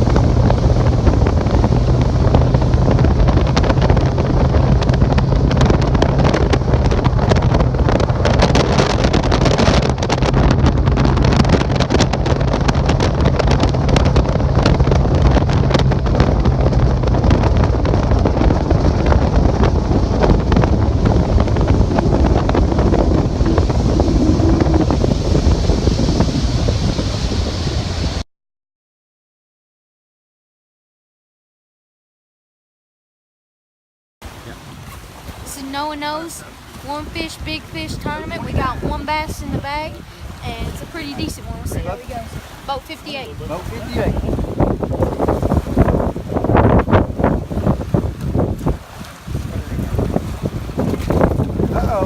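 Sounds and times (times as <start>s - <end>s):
steady low hum: 0.0s - 27.3s
boat motor running: 0.0s - 28.2s, 34.2s - 52.0s
wind buffeting microphone: 0.0s - 28.2s, 34.2s - 52.0s.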